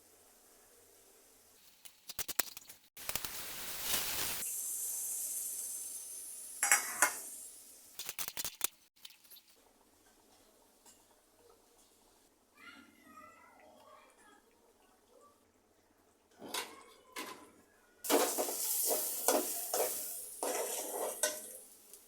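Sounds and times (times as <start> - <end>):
food sizzling in hot oil: 0.0 - 9.0, 18.0 - 22.0
metal utensils clinking on pan: 6.6 - 7.2, 18.1 - 21.7.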